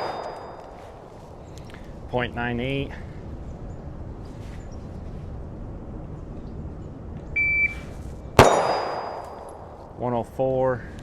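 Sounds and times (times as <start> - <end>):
bullet ringing steel target: 0.0 - 0.8, 8.4 - 9.7
pistol shot: 8.4 - 9.6.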